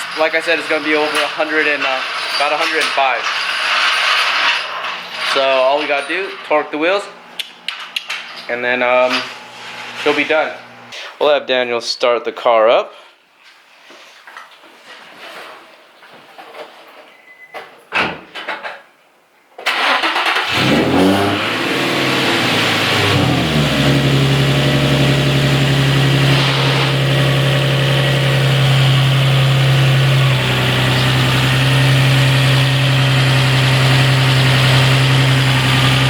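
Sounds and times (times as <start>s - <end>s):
car engine starting and idling: 19.6s - 36.0s.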